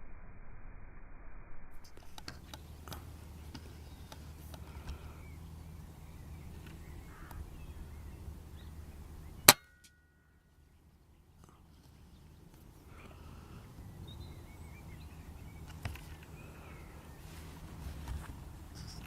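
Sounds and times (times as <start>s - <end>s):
faint clicks and rustles: 2.0s - 7.4s, 15.6s - 19.0s.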